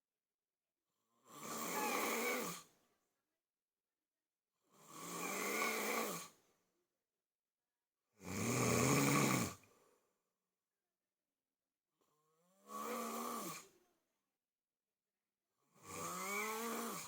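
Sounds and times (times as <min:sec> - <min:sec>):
person snoring: 0:01.2 - 0:02.7, 0:04.8 - 0:06.4, 0:08.2 - 0:09.7, 0:12.5 - 0:13.8, 0:15.7 - 0:17.0.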